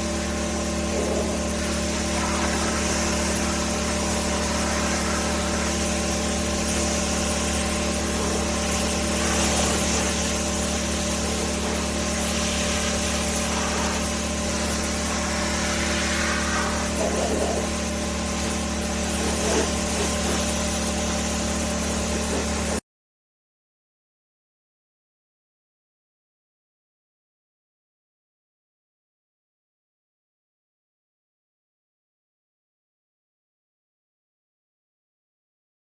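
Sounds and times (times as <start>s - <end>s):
pressure washer motor hum: 0.0s - 22.8s
spray hissing: 0.0s - 22.8s.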